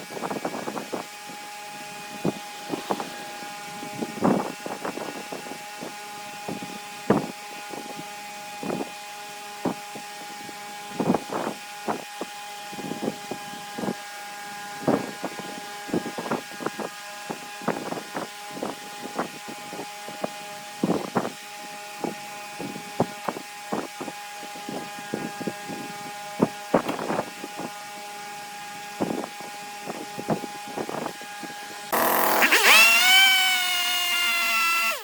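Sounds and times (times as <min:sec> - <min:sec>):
tool cutting spinning wood: 0:31.9 - 0:35.0
wood lathe motor hum: 0:31.9 - 0:35.0.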